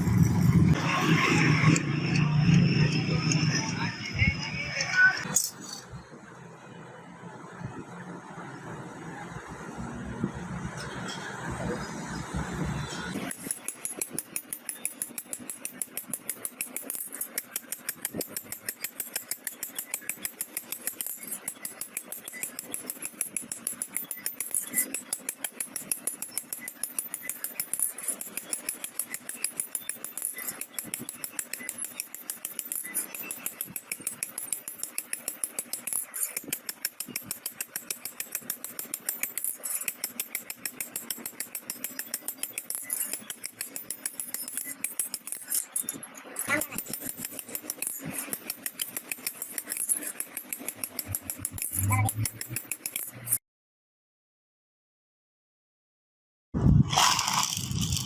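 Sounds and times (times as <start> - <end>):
fast high clicks: 13.2 - 53.4.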